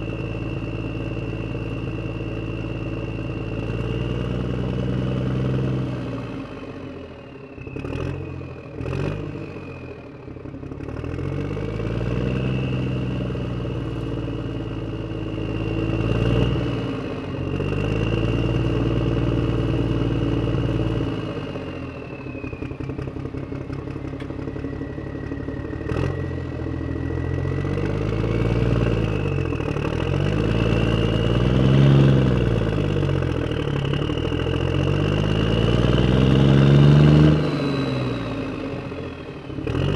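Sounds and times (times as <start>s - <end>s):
vehicle engine revving: 7.6s - 10.0s, 10.6s - 39.9s.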